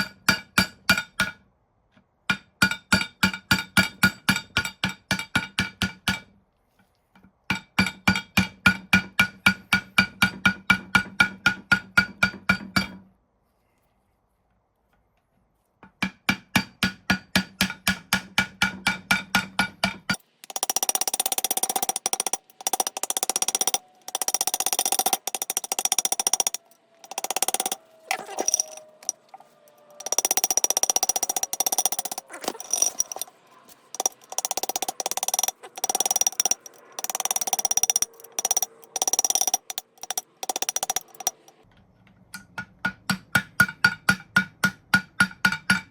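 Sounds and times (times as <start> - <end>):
harsh metalworking noise: 20.1 - 41.6.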